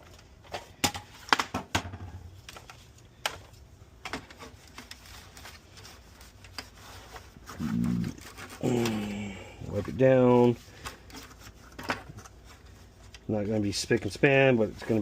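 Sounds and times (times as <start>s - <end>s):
clicks and knocks handling parts: 0.0s - 5.5s, 10.8s - 13.3s.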